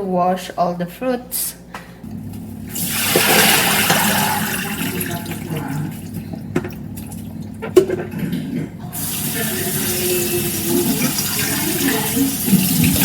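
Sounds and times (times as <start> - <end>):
tap water running into sink: 2.7 - 13.0.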